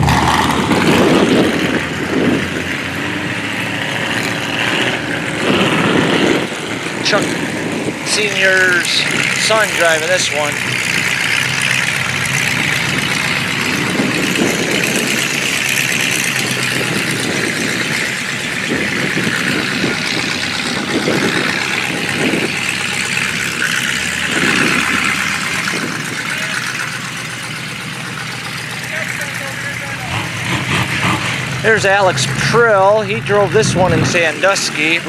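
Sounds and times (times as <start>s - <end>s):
car engines idling: 0.0s - 35.0s.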